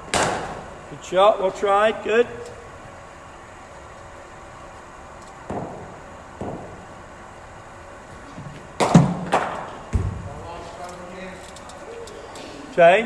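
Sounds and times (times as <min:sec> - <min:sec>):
cricket ball impacts: 0:00.1 - 0:00.6, 0:05.5 - 0:06.8, 0:08.4 - 0:10.4.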